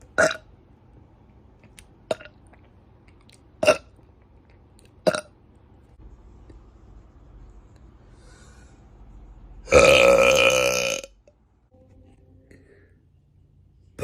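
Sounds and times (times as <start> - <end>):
woman burping: 9.7 - 11.1.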